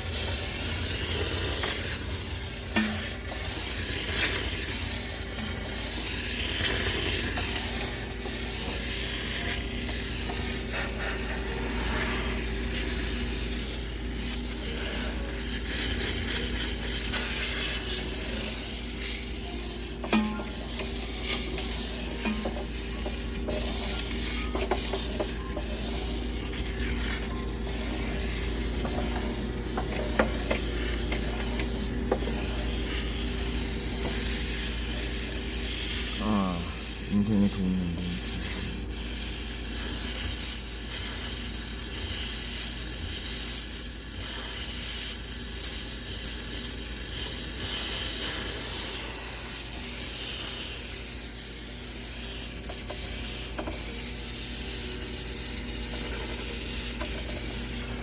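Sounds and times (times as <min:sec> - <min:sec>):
steam cleaner hissing: 0:00.0 - 0:58.0
spits and crackles: 0:30.3 - 0:39.2.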